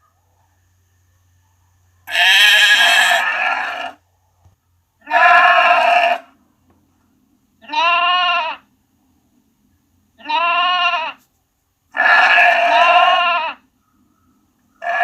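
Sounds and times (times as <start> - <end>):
sheep bleating: 2.1 - 4.0, 5.0 - 6.3, 7.6 - 8.6, 10.2 - 11.2, 12.0 - 13.6.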